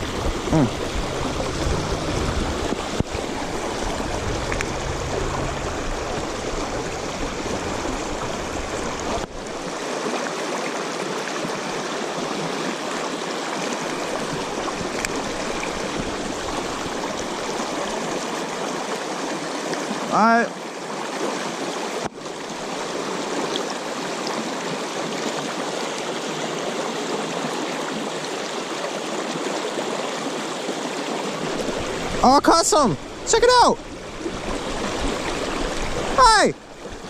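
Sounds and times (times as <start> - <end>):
low rumble: 0.0 - 9.7
water rushing over rocks: 0.0 - 37.0.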